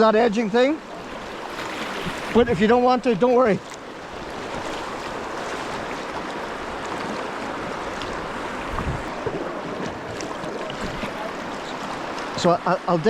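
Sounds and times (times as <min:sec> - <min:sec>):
river water rushing: 0:00.0 - 0:13.0.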